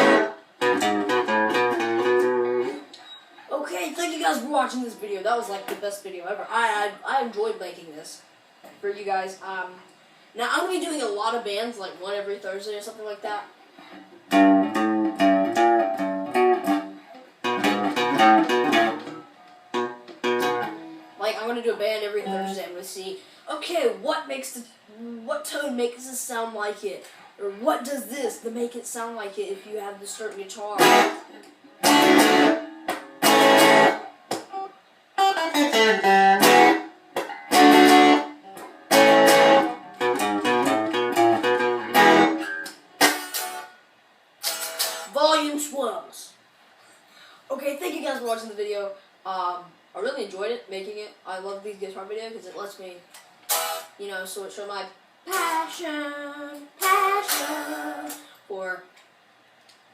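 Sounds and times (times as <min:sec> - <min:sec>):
electric guitar strummed chords: 0:00.0 - 0:02.8, 0:14.3 - 0:21.2, 0:30.8 - 0:43.7
guitar single-note runs: 0:14.3 - 0:21.2, 0:35.2 - 0:43.7.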